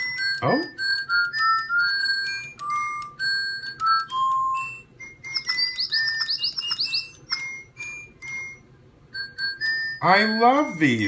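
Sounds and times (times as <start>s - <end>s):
toy birds whistling melody: 0.0s - 11.0s
rapid sweeping chirps: 5.3s - 7.4s.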